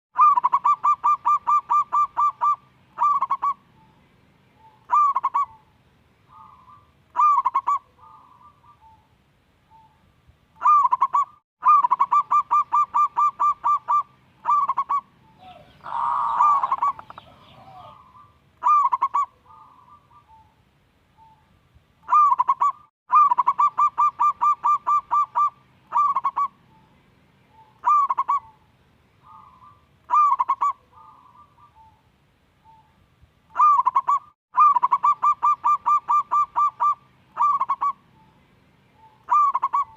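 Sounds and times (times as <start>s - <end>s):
dove cooing: 0.2s - 4.0s, 4.6s - 5.7s, 6.3s - 9.1s, 10.6s - 20.6s, 22.1s - 26.9s, 27.5s - 32.0s, 33.5s - 38.4s, 39.0s - 39.9s
rough loud bird call: 10.6s - 20.4s.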